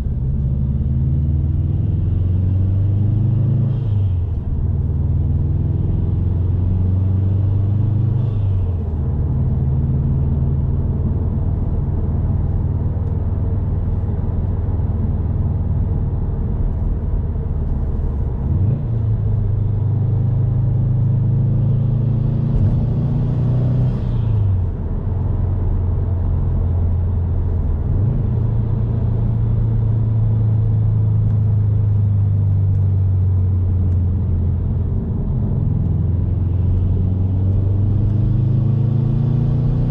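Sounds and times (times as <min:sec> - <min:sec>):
car engine droning: 0:00.0 - 0:39.9.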